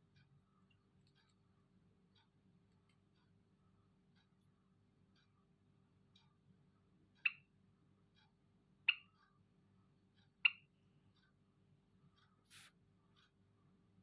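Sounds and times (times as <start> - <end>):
brief hiss: 12.5 - 12.7.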